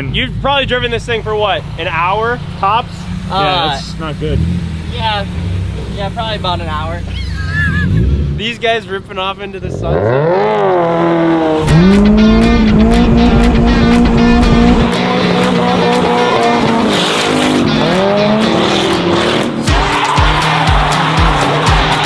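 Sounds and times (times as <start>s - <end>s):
tyres squealing: 0.0s - 12.0s, 14.4s - 22.0s
car engines revving hard: 0.0s - 22.0s
background music beat: 11.6s - 22.0s.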